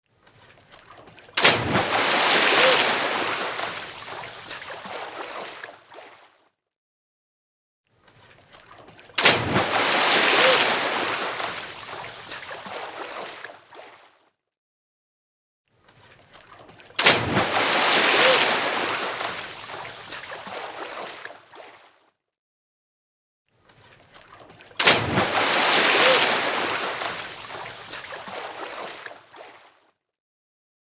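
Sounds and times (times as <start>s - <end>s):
diving splash: 1.4s - 6.1s, 9.2s - 13.9s, 17.0s - 21.7s, 24.8s - 29.6s
water churning and bubbling: 9.3s - 13.2s, 24.8s - 28.9s.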